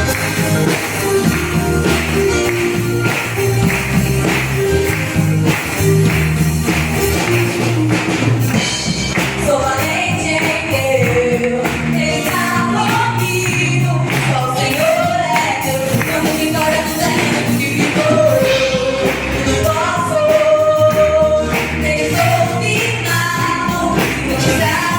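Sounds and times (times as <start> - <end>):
band playing gospel music: 0.0 - 24.9
person singing: 9.5 - 24.9.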